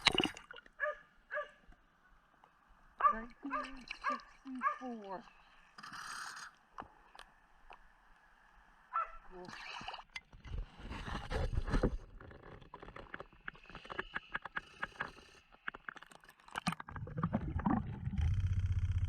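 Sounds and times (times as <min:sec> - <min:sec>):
underwater clicks and scrapes: 0:00.0 - 0:00.8, 0:03.2 - 0:07.9, 0:09.4 - 0:19.0
steady low rumble: 0:17.6 - 0:19.0.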